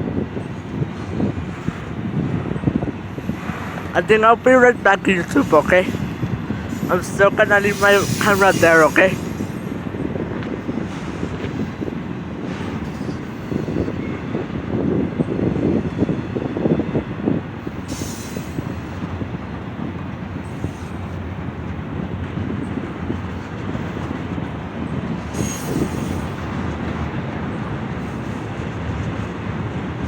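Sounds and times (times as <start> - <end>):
train wheels rumbling on rail: 0.0 - 30.0
high-pitched bursts: 3.4 - 9.9.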